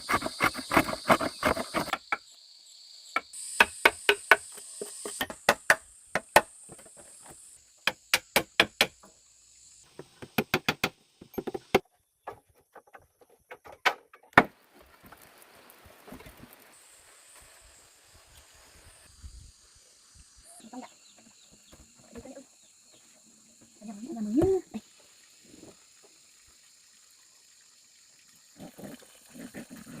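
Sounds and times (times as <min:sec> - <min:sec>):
high insect buzz: 0:00.0 - 0:11.1.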